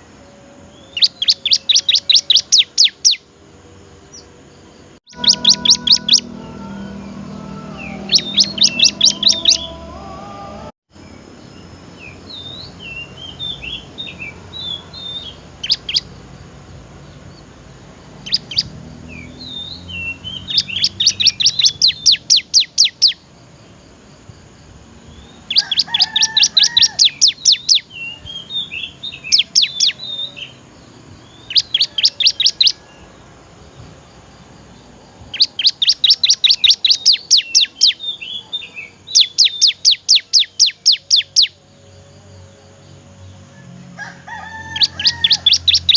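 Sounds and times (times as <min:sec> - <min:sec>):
bird rapid sharp chirps: 0:00.9 - 0:03.2, 0:05.1 - 0:09.8, 0:12.0 - 0:16.2, 0:18.2 - 0:23.2, 0:25.2 - 0:27.9, 0:29.2 - 0:30.2, 0:31.3 - 0:32.8, 0:35.3 - 0:38.1, 0:39.0 - 0:41.5, 0:44.8 - 0:45.9
bird soft twittering: 0:05.1 - 0:09.8, 0:18.3 - 0:23.2, 0:35.3 - 0:41.5.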